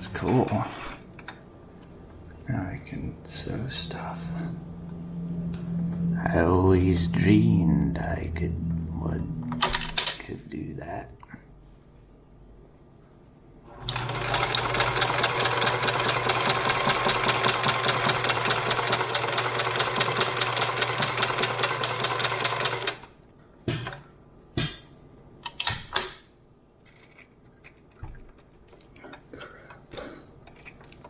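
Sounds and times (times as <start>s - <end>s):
sewing machine stitching: 13.7s - 23.1s.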